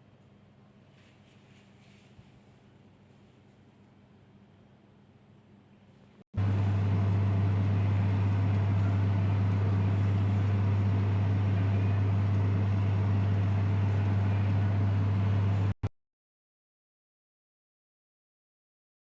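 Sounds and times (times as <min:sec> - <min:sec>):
low machine hum: 0:03.8 - 0:15.8.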